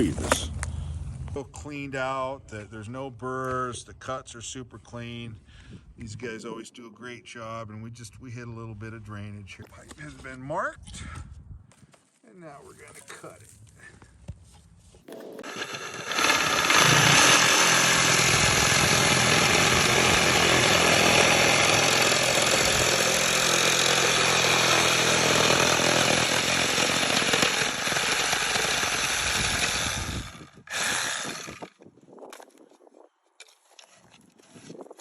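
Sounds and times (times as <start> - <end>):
reciprocating saw cutting plastic pipe: 15.1 - 31.7.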